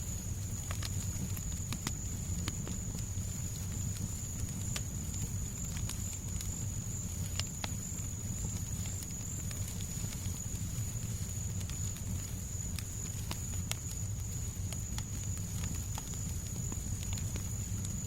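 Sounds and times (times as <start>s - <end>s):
fireplace crackling and popping: 0.0s - 18.0s
low rumble of fire: 0.0s - 18.0s.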